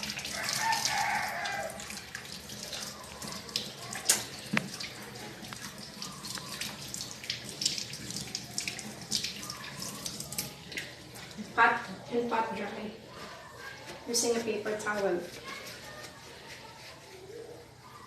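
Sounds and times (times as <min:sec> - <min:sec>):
tap water running into sink: 0:00.0 - 0:11.5
hands washing under water: 0:00.0 - 0:11.6.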